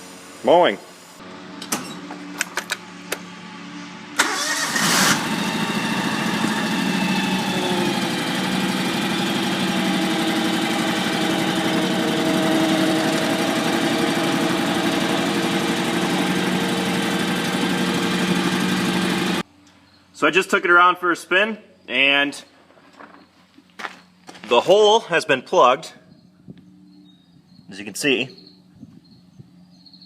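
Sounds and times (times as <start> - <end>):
riding lawn mower engine: 1.2 - 19.5.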